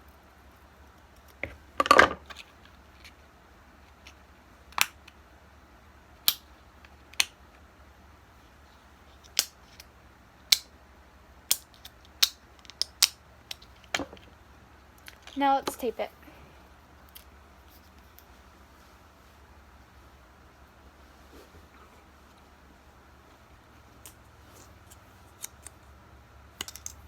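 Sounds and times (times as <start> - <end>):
rustle of handled material: 17.3 - 25.9
scissors snipping: 24.0 - 25.9.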